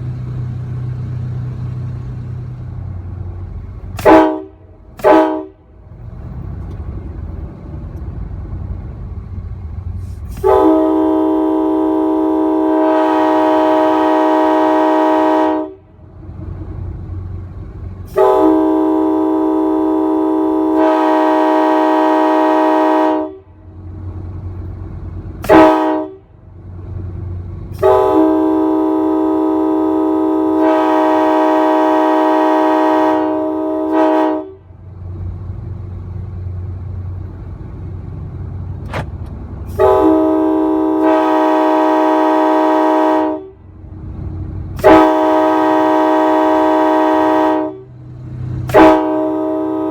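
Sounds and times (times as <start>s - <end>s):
low rumble: 0.0s - 12.0s, 34.6s - 41.0s.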